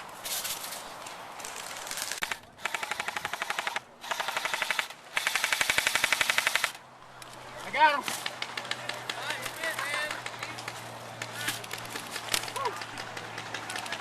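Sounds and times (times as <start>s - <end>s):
airsoft rifle firing full-auto: 2.2s - 6.8s.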